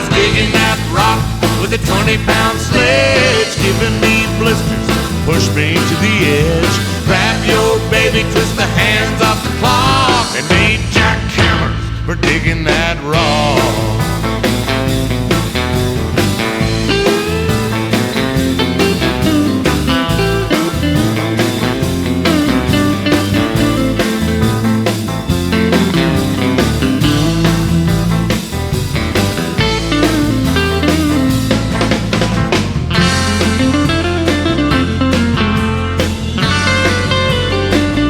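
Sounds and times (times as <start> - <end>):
bass: 0.0 - 38.0
steady drum beat: 0.0 - 38.0
electric guitar bending notes: 11.8 - 38.0.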